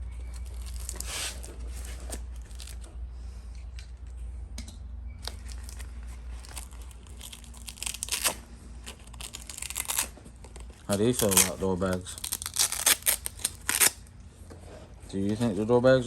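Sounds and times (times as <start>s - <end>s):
fabric straps ripping and rustling: 0.4s - 2.8s, 6.4s - 14.0s.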